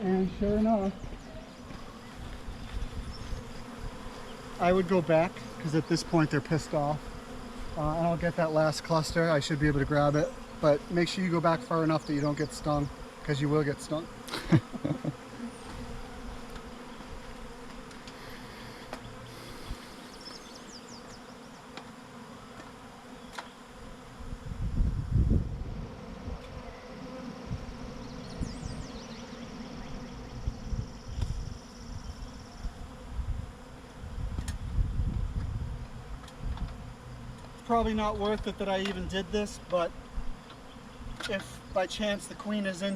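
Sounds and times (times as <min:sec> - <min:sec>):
bees buzzing: 0:00.0 - 0:42.9.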